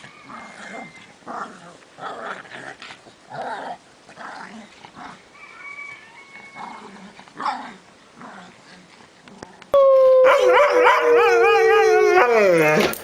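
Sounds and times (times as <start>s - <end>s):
dog whining: 9.8s - 13.0s
dog barking: 10.2s - 11.9s.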